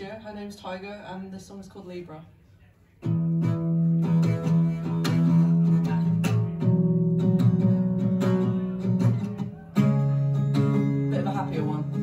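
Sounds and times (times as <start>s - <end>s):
guitar chords: 3.0s - 12.0s.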